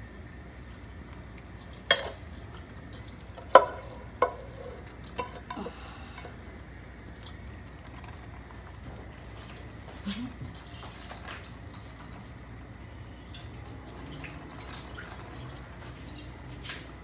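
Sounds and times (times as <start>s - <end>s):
frying sizzle: 0.0s - 17.0s
utensil knocking and scraping pan: 2.9s - 6.4s.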